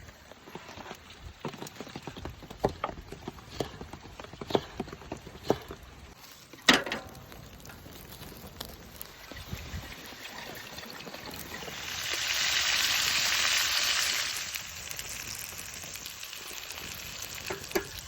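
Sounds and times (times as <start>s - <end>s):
food sizzling in a pan: 7.3s - 18.0s.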